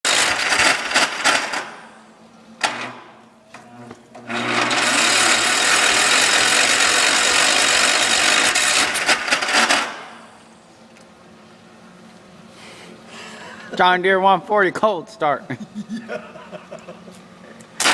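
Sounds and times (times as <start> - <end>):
engine starter cranking: 0.1 - 1.7, 4.3 - 10.1.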